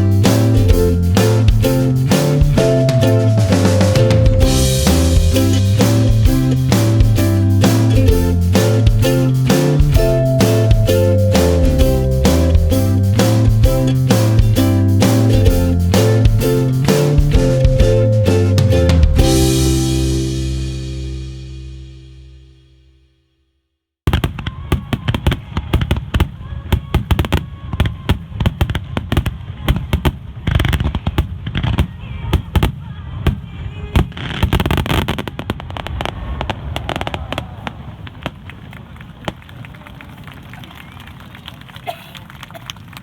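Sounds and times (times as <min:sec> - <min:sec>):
background music: 0:00.0 - 0:22.8
fireworks bangs and crackles: 0:24.1 - 0:40.4.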